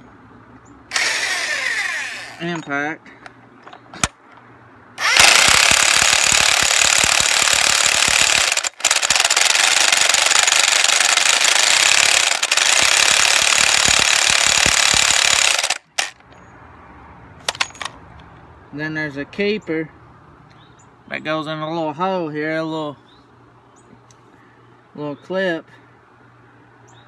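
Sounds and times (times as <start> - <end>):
pneumatic impact wrench hammering: 0.9 - 2.7, 5.0 - 16.2.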